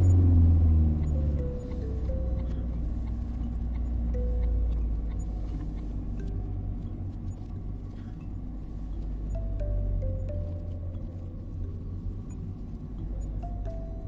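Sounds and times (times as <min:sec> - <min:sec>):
car driving rumble: 0:00.0 - 0:14.0
soft sustained melody: 0:00.0 - 0:14.0.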